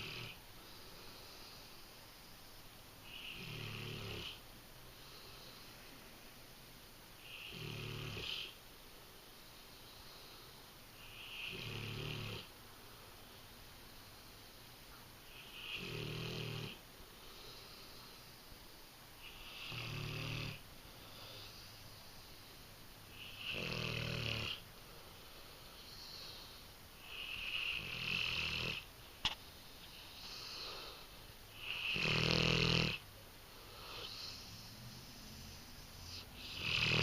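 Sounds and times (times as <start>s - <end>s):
dog snoring: 0.0s - 0.4s, 3.0s - 4.4s, 7.2s - 8.6s, 10.2s - 12.6s, 15.3s - 18.1s, 19.2s - 21.7s, 23.1s - 24.6s, 25.8s - 28.9s, 29.9s - 37.0s
soft breaths: 0.0s - 7.6s, 8.2s - 11.6s, 12.4s - 15.8s, 16.4s - 32.0s, 33.0s - 37.0s.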